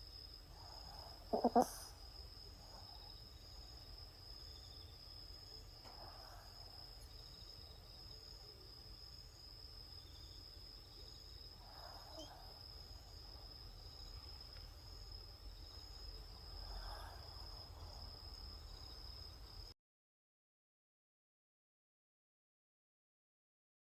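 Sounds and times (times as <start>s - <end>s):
dog snoring faintly: 0.6s - 3.2s, 11.6s - 12.6s.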